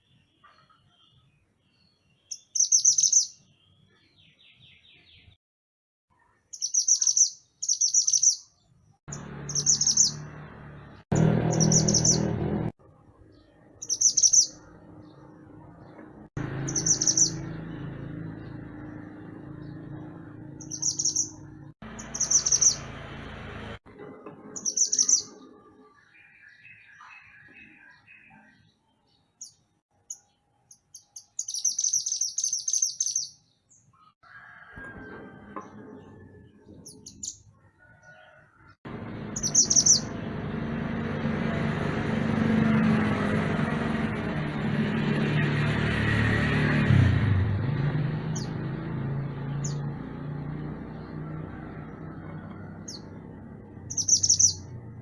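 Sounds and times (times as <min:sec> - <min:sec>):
songbird trilled calls: 0:02.3 - 0:03.4, 0:06.6 - 0:08.5, 0:09.1 - 0:10.2, 0:11.2 - 0:12.3, 0:13.8 - 0:14.6, 0:16.6 - 0:17.4, 0:20.6 - 0:21.4, 0:22.0 - 0:22.8, 0:30.9 - 0:33.4, 0:39.4 - 0:40.1, 0:53.9 - 0:54.7.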